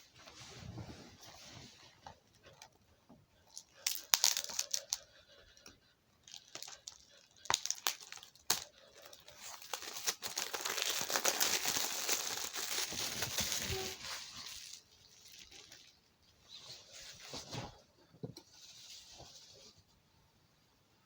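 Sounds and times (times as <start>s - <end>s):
plastic shrink wrap crinkling: 3.4s - 17.5s.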